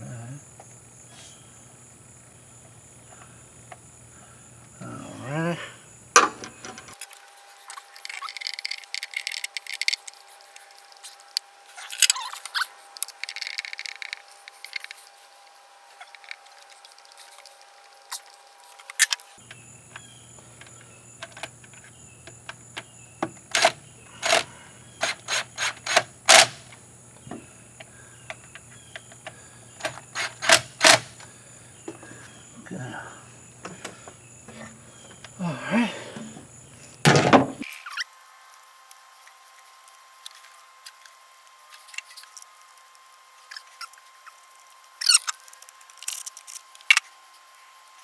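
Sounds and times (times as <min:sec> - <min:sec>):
tools clicking and clinking: 0:06.2 - 0:15.1, 0:23.5 - 0:26.8, 0:29.8 - 0:31.1
rustling and scraping: 0:06.4 - 0:19.4.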